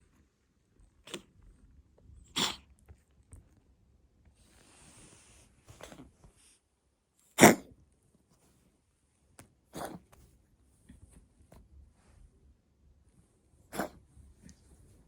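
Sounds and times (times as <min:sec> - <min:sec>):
cat coughing: 0:02.3 - 0:02.7, 0:07.4 - 0:07.7, 0:09.7 - 0:10.0, 0:13.7 - 0:14.0.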